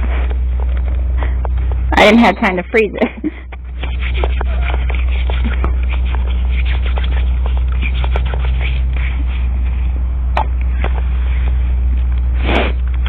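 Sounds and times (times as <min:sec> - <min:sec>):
low hum: 0:00.0 - 0:13.0
faint clicks and rustles: 0:03.2 - 0:13.0.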